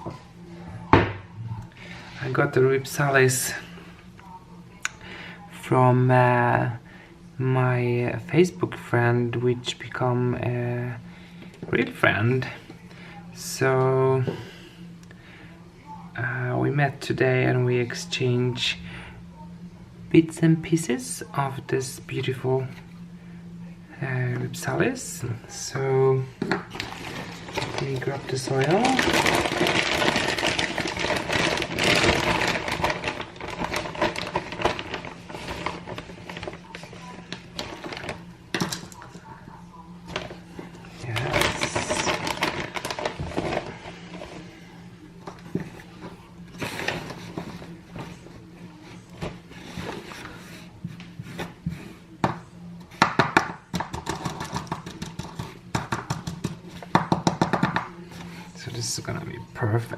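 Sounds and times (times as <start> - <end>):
soil bag rustling and crackling: 26.7 - 38.3, 40.1 - 44.5.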